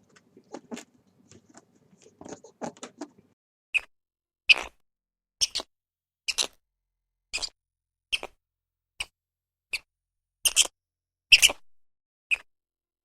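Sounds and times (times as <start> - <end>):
small animal squeaking: 0.1 - 3.9, 4.5 - 4.8, 5.4 - 5.7, 6.3 - 6.6, 7.3 - 8.4, 9.0 - 10.7, 11.3 - 11.6, 12.3 - 12.5.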